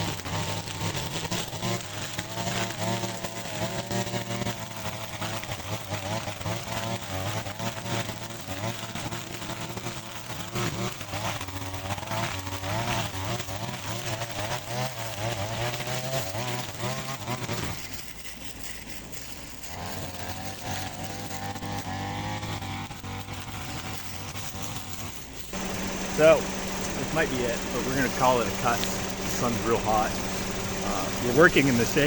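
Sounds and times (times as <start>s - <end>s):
grass cutter engine buzzing: 0.0s - 17.6s, 19.7s - 32.0s.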